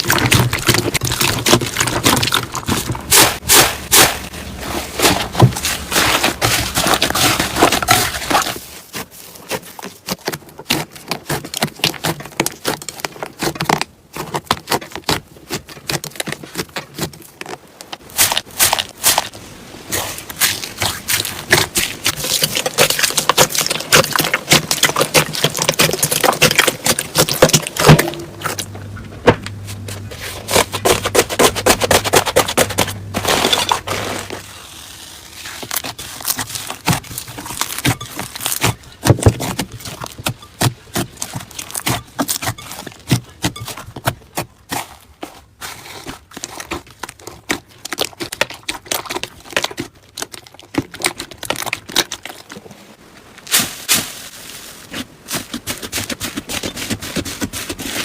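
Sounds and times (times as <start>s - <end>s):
slime crackling and popping: 17.9s - 28.6s, 34.7s - 43.7s.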